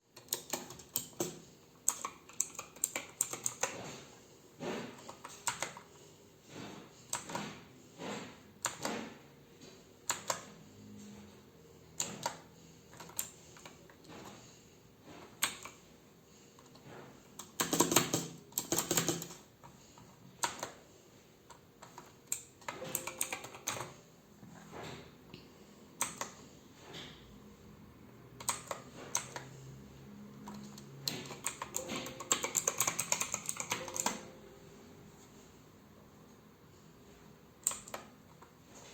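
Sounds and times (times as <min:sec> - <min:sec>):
mechanical keyboard clicks: 0:00.2 - 0:03.8, 0:05.0 - 0:05.9, 0:10.1 - 0:10.5, 0:17.4 - 0:19.4, 0:20.4 - 0:20.8, 0:21.8 - 0:24.0, 0:26.0 - 0:26.4, 0:28.4 - 0:29.5, 0:30.4 - 0:34.4, 0:37.6 - 0:38.5.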